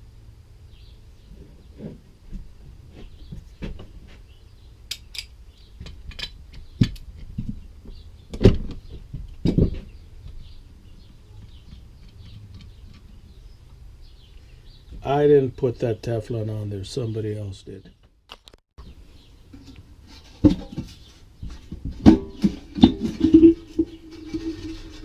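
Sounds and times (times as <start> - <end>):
metal parts clicking and knocking: 4.9 - 7.5.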